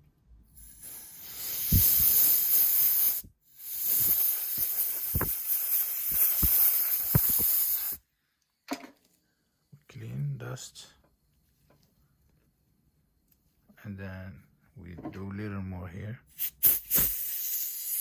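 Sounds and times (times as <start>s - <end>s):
compressed air hissing: 0.6s - 8.0s, 16.4s - 18.0s.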